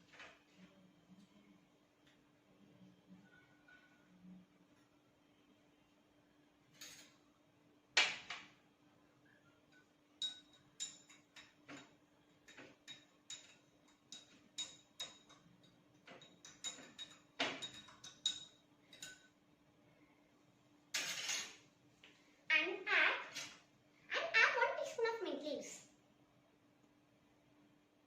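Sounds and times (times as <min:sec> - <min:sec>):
spoon clinking against glass: 0:09.7 - 0:11.9, 0:12.5 - 0:19.3.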